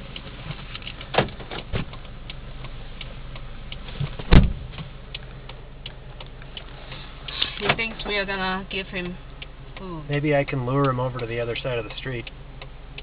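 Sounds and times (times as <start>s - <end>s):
steady low hum: 0.0s - 13.0s
loud thump: 4.1s - 4.8s.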